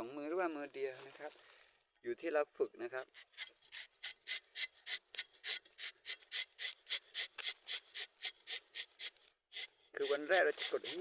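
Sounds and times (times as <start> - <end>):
knife rasping bark: 3.1 - 11.0.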